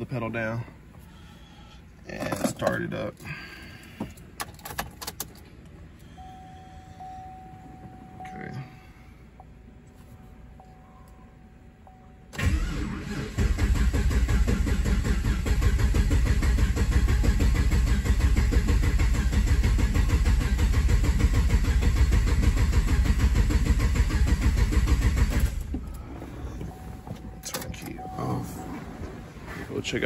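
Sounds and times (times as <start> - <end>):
starter cranking engine: 12.4 - 26.7.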